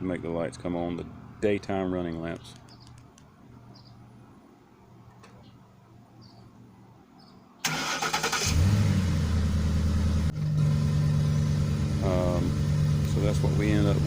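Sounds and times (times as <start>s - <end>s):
engine cranking: 7.6s - 8.8s
engine idling: 7.7s - 14.0s.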